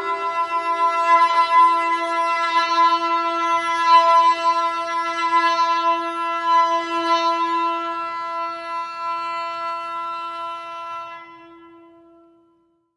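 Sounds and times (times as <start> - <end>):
bowed string instrument note: 0.0 - 4.5.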